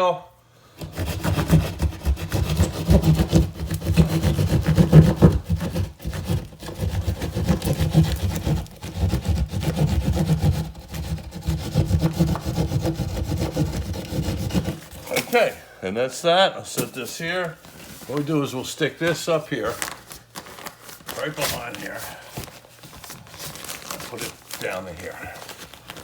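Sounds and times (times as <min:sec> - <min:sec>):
hand saw rasping through drywall: 0:00.8 - 0:15.3.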